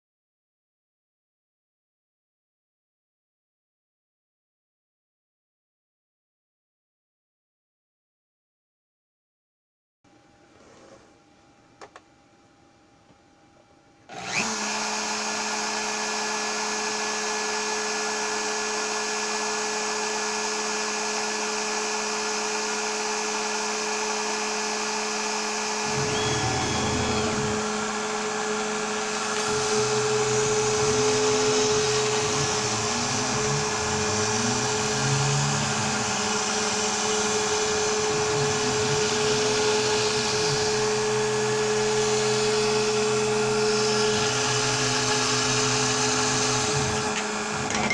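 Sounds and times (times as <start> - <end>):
router spindle whine: 14.1 - 47.9
stepper motors rising and falling: 14.2 - 15.4, 25.2 - 47.9.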